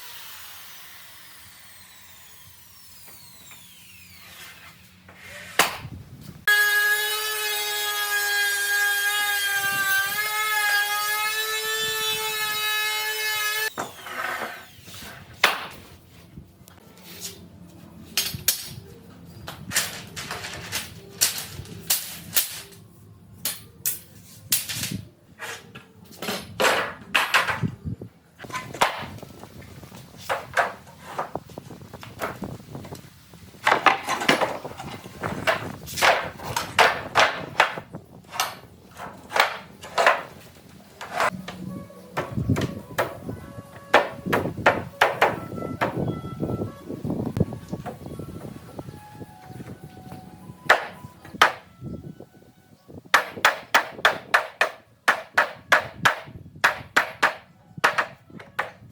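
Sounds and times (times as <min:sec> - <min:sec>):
hammer striking wood: 0:15.4 - 0:15.8, 0:35.4 - 0:38.6, 0:39.3 - 0:40.3, 0:43.9 - 0:46.0, 0:50.7 - 0:51.6, 0:53.1 - 0:58.8.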